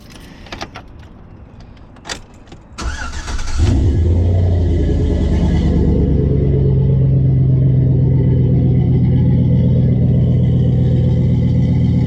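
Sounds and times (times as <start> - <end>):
truck engine starting and idling: 2.8 - 12.0.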